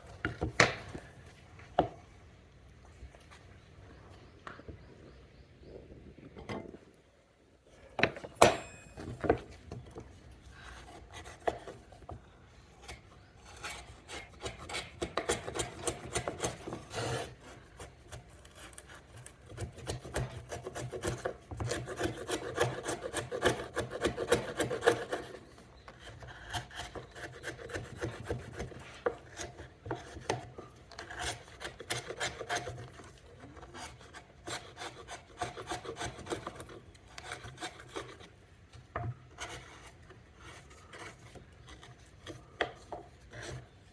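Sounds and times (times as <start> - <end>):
chisel scraping wood: 10.5 - 12.2, 12.8 - 38.4, 39.0 - 43.9.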